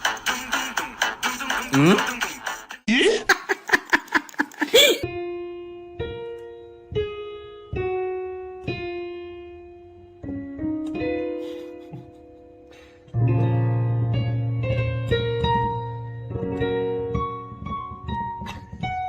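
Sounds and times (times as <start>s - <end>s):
electric piano notes: 5.1s - 19.0s.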